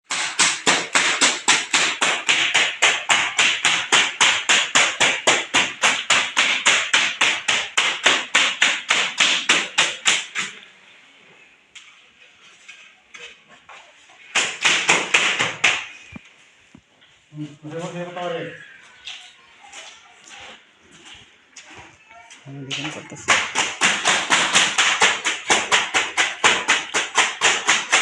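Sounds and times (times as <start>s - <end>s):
rapid hammer-like strikes: 0.1s - 10.5s, 14.3s - 15.9s, 23.3s - 28.0s
scattered knocks: 22.9s - 28.0s.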